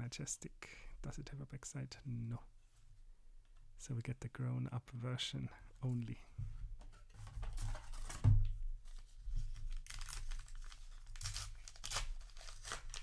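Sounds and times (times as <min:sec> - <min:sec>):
card packaging crinkling and tearing: 0:08.9 - 0:13.0.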